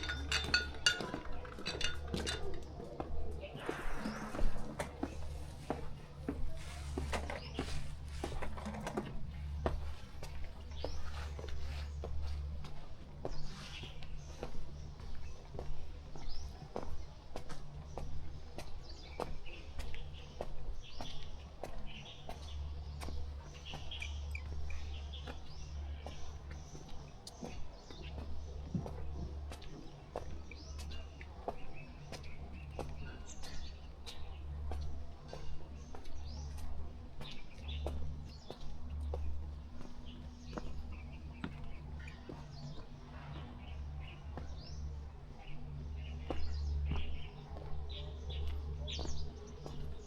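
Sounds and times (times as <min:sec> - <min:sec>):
constant low hum: 0:00.0 - 0:50.0
footsteps on hard walkway: 0:00.0 - 0:50.0
small birds chirping: 0:00.0 - 0:50.0.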